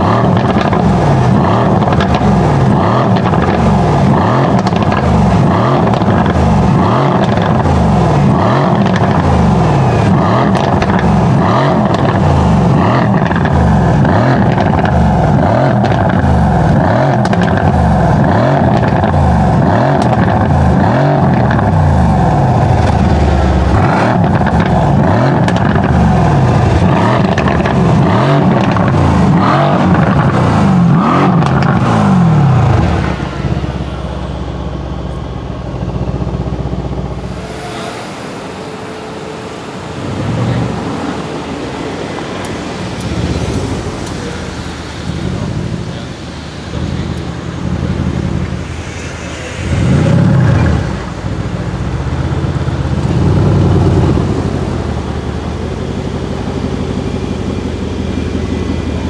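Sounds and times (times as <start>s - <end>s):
car engine revving: 0.0s - 59.0s
exhaust pops: 0.1s - 9.4s, 10.1s - 33.2s.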